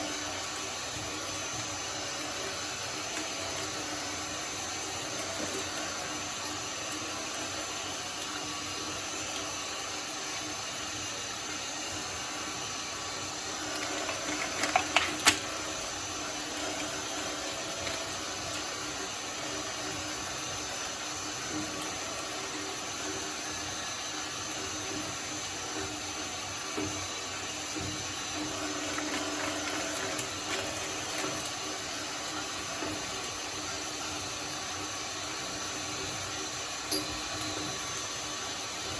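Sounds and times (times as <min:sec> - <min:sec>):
shredder running: 0:00.0 - 0:38.9.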